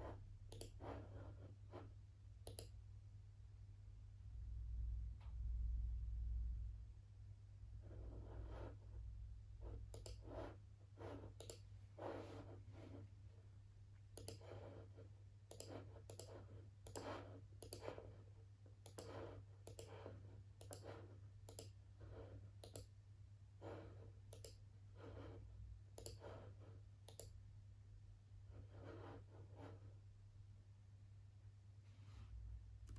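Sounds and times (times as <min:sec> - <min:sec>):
low steady hum: 0:00.0 - 0:32.9
computer mouse clicking: 0:00.5 - 0:01.0, 0:02.4 - 0:02.8, 0:09.8 - 0:12.3, 0:14.1 - 0:14.8, 0:15.5 - 0:18.1, 0:18.8 - 0:21.8, 0:22.6 - 0:22.9, 0:24.3 - 0:24.6, 0:25.9 - 0:26.4, 0:27.0 - 0:27.4.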